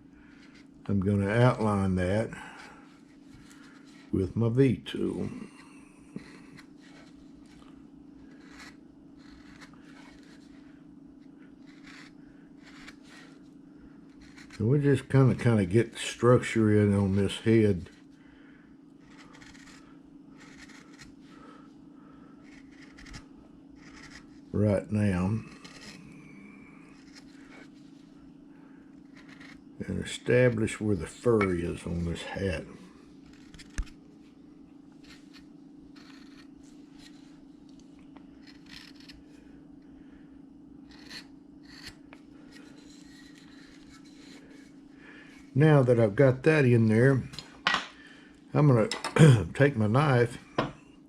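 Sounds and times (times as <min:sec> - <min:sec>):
steady low hum: 0:00.0 - 0:51.0
carving tool scraping wood: 0:00.3 - 0:00.7, 0:08.3 - 0:10.6, 0:11.6 - 0:13.4, 0:14.1 - 0:15.6, 0:16.4 - 0:18.0, 0:19.0 - 0:21.2, 0:22.4 - 0:26.1, 0:26.9 - 0:27.8, 0:29.0 - 0:30.8, 0:33.2 - 0:34.0, 0:35.0 - 0:37.3, 0:38.4 - 0:39.2, 0:40.8 - 0:44.7.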